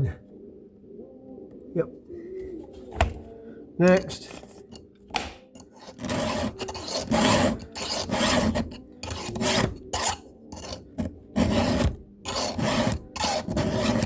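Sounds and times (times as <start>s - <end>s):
file rasping on metal: 5.6s - 14.0s.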